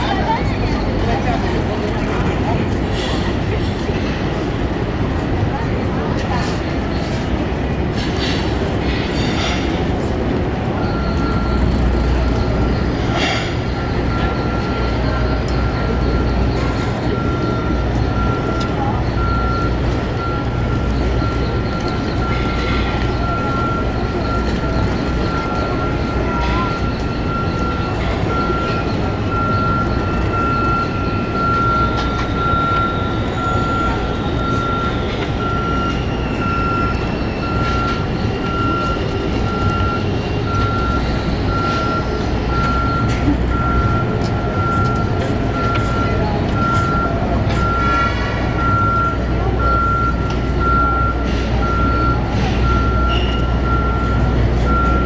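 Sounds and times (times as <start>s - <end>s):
city traffic rumble: 0.0s - 55.0s
reversing alarm beeping: 0.0s - 55.0s.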